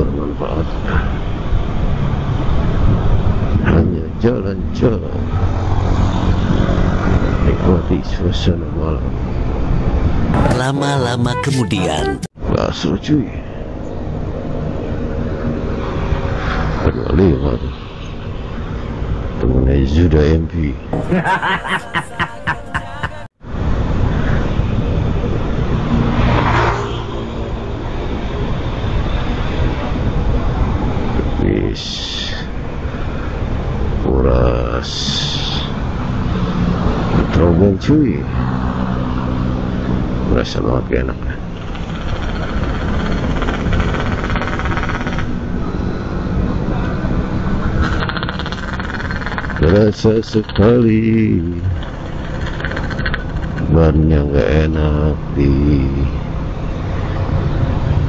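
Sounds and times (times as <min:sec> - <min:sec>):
road noise: 0:00.0 - 0:58.0
voice-like pitched sound: 0:10.4 - 0:12.3, 0:21.0 - 0:23.3
vehicle engine hum: 0:32.5 - 0:58.0.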